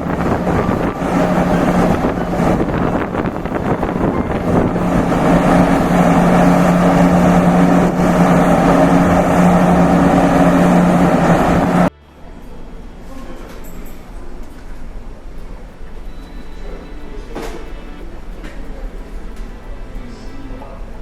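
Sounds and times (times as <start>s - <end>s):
wind buffeting microphone: 0.0s - 11.9s
rushing noise: 0.0s - 13.4s
ship engine drone: 0.0s - 21.0s.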